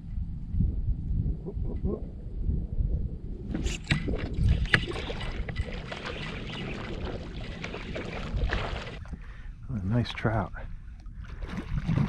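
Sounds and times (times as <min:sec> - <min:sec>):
water splashing against kayak: 0:03.9 - 0:09.3, 0:11.1 - 0:12.0.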